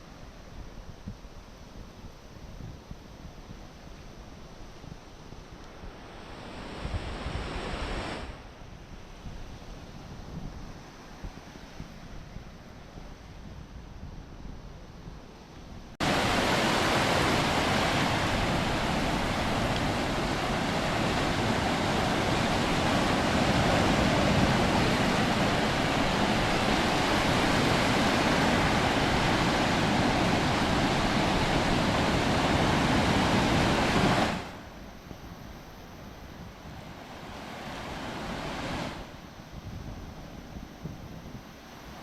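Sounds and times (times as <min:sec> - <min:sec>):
loud steady rushing noise: 0:16.0 - 0:34.6.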